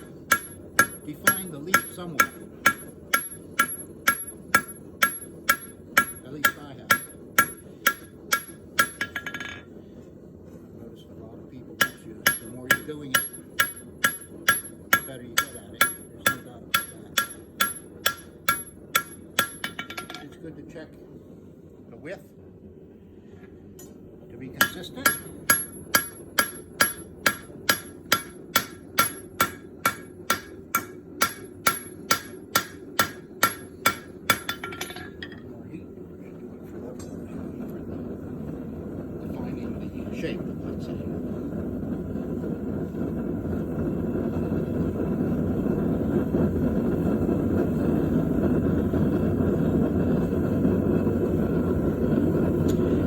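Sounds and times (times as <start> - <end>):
hammer striking metal on anvil: 0.0 - 9.7, 11.8 - 20.4, 24.6 - 35.4
forge running: 0.0 - 20.4, 24.2 - 53.0.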